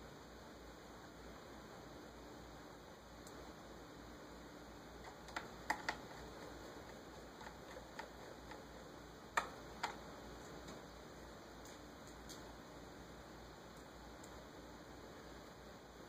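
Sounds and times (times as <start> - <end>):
laptop parts clicking: 5.0 - 10.1.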